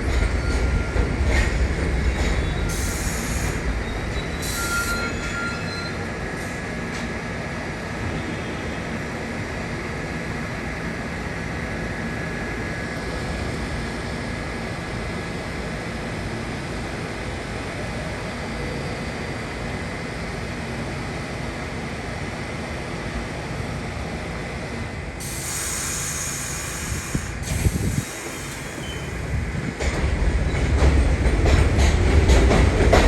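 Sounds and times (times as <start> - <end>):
subway train rumble: 0.0 - 33.0
wheel squeal: 3.8 - 6.0, 28.2 - 29.2
short high hisses: 25.2 - 29.2.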